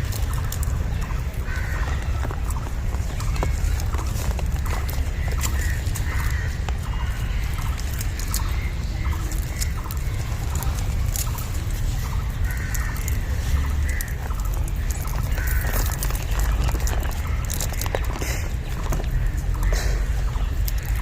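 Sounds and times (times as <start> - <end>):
high chirping animal calls: 0.0 - 21.0.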